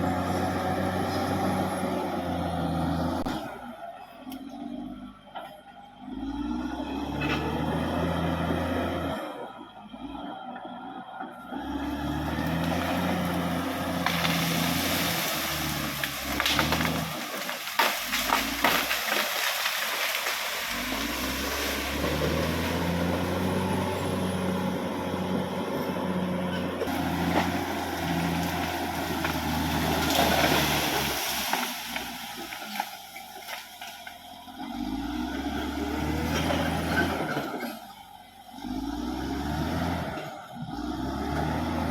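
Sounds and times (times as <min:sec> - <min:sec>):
bulldozer diesel engine: 0:00.0 - 0:41.9
sharp cracks and knocks: 0:13.9 - 0:22.5.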